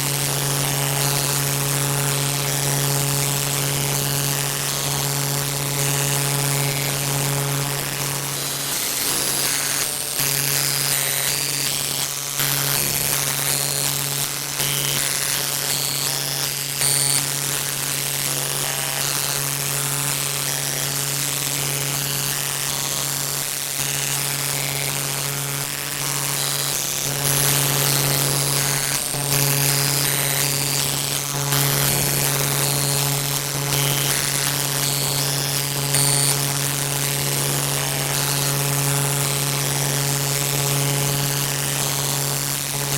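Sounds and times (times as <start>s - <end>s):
low buzzing hum: 0.0s - 14.3s.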